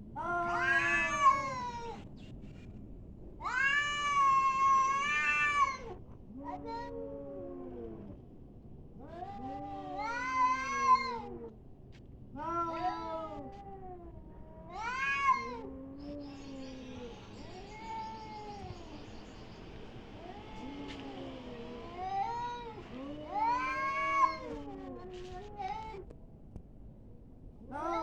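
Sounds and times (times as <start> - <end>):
cats yowling in a fight: 0.2 - 2.0, 3.4 - 8.2, 9.0 - 11.5, 12.4 - 26.1, 27.7 - 28.0
hiss-like noise: 16.2 - 26.0.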